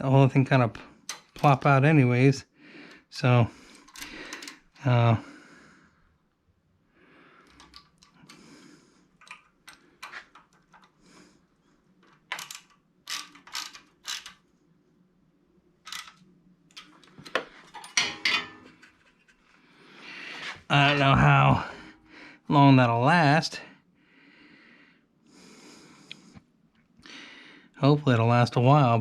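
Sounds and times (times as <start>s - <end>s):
metal parts clattering: 12.2s - 14.4s, 15.8s - 16.2s, 16.8s - 19.3s
ratchet clicking: 12.3s - 14.4s.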